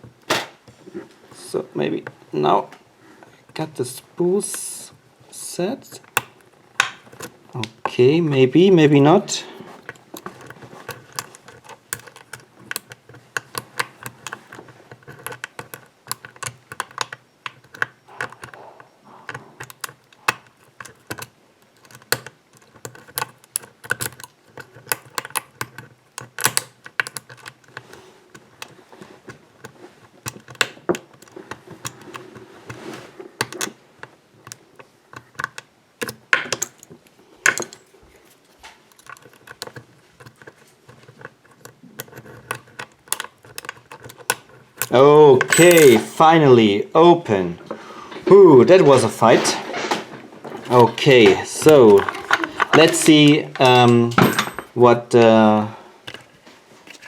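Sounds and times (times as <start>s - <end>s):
lock pick clicking on lock pins: 9.8s - 32.2s, 33.4s - 37.9s, 38.9s - 46.3s, 50.6s - 55.4s.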